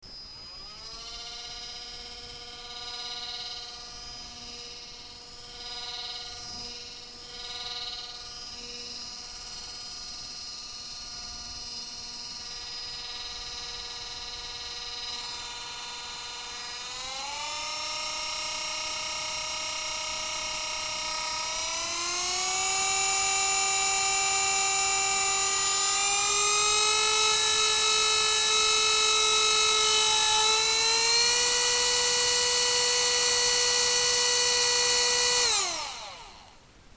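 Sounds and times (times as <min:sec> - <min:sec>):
drone propellers whining: 0:15.0 - 0:36.6.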